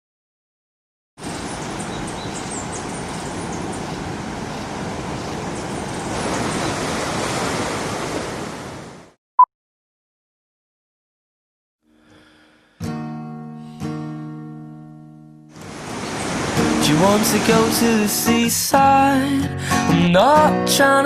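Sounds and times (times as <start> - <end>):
sea surf washing: 1.2 - 9.2, 15.6 - 19.3.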